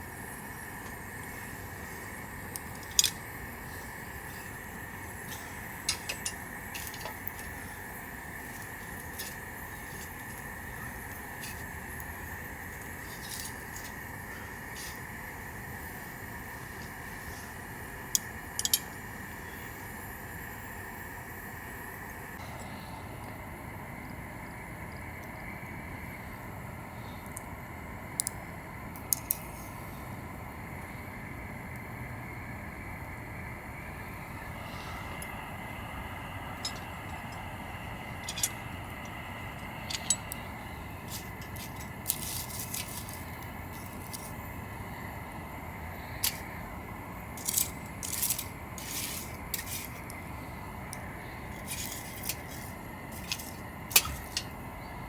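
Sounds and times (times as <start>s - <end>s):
steady background hum: 0.0s - 55.0s
utensils clicking and scraping: 0.2s - 19.2s, 36.5s - 45.0s, 46.0s - 54.7s.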